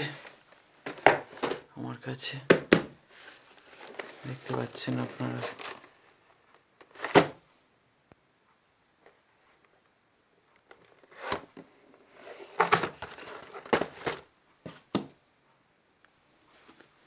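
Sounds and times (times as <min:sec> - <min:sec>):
packaging crinkling and rustling: 0:03.1 - 0:07.4, 0:12.2 - 0:14.3.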